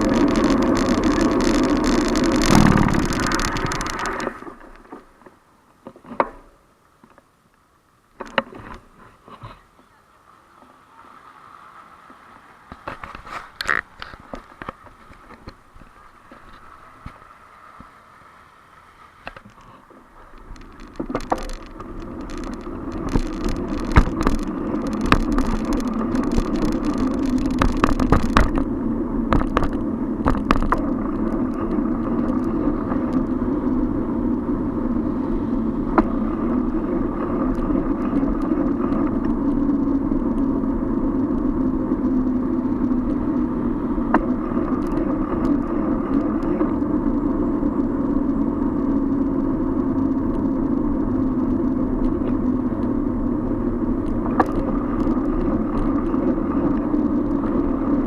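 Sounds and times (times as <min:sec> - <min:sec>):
bicycle clicks and rattles: 0:00.0 - 0:05.0, 0:12.7 - 0:16.7, 0:20.3 - 0:34.4, 0:35.9 - 0:58.0
wind and road noise: 0:00.0 - 0:58.0.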